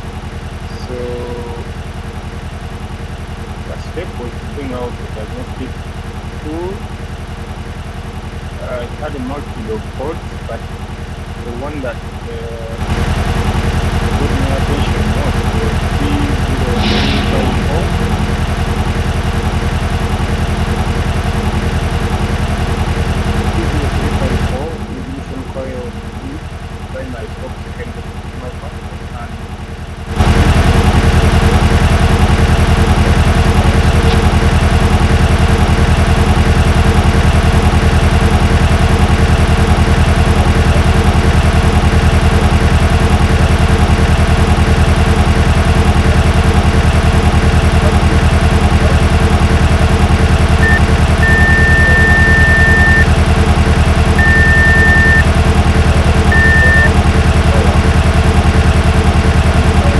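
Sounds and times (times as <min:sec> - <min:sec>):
car engine idling rough: 0:00.0 - 0:16.8, 0:55.2 - 0:59.9
short high beeps: 0:16.6 - 0:18.4, 0:50.6 - 0:53.1, 0:54.2 - 0:55.2, 0:56.3 - 0:56.9.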